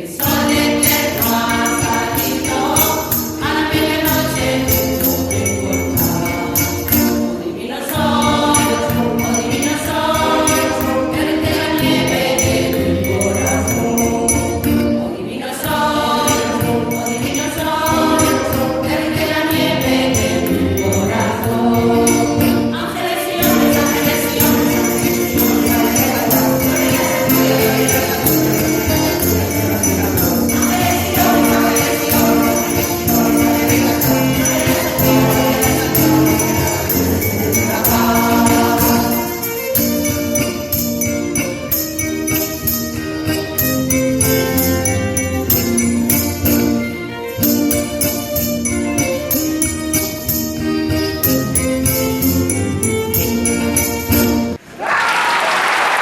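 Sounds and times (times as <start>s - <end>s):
mixed choir singing a carol: 0.0s - 50.0s
jingling percussion: 0.0s - 54.6s.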